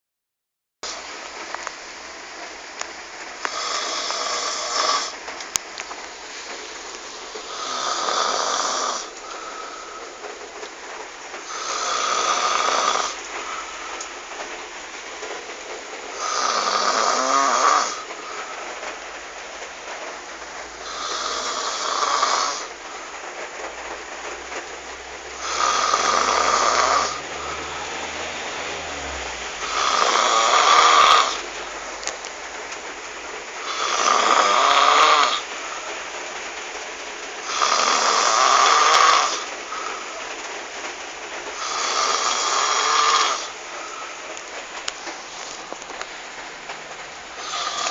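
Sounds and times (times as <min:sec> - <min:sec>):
constant background hiss: 0:00.8 - 0:47.9
person snoring: 0:03.5 - 0:05.2, 0:07.4 - 0:10.0, 0:11.5 - 0:13.2, 0:16.2 - 0:18.1, 0:20.8 - 0:22.7, 0:25.4 - 0:31.4, 0:33.6 - 0:35.4, 0:37.4 - 0:40.0, 0:41.6 - 0:43.5, 0:47.4 - 0:47.9.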